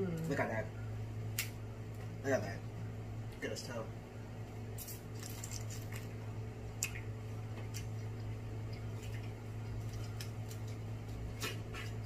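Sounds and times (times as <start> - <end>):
wet squishing: 4.8 - 12.0.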